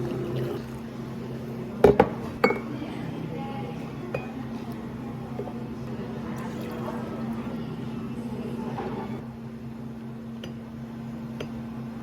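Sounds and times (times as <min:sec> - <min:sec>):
glassware and dishes clinking: 0:02.4 - 0:02.7.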